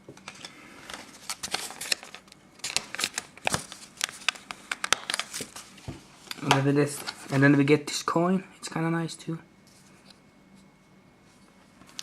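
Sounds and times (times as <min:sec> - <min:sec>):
plastic packaging crackling: 0:00.2 - 0:07.5.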